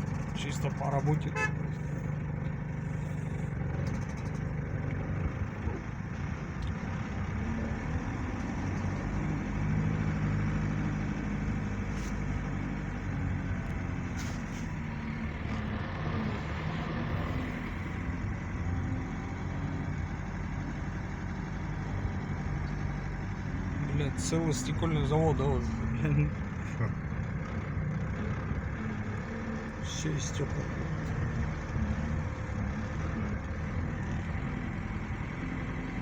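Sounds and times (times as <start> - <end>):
vehicle engine and road noise: 0.0 - 36.0.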